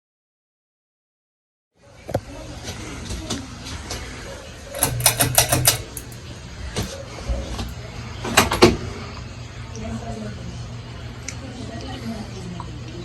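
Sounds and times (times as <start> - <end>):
ceiling fan motor hum: 1.8 - 13.0
sharp clicks: 4.7 - 6.2.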